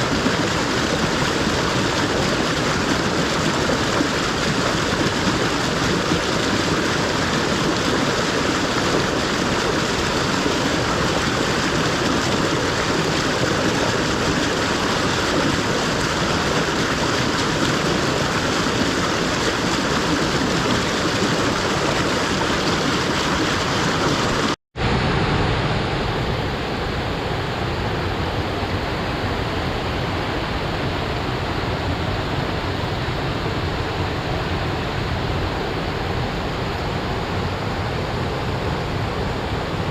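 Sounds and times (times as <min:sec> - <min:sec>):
waterfall rushing: 0:00.0 - 0:28.3.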